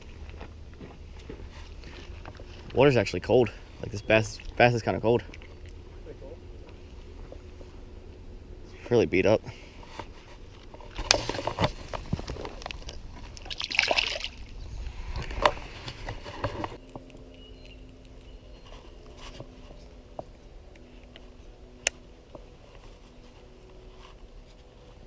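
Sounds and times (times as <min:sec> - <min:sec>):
faint steady hum: 0:00.0 - 0:25.0
water sloshing and splashing: 0:10.9 - 0:16.8.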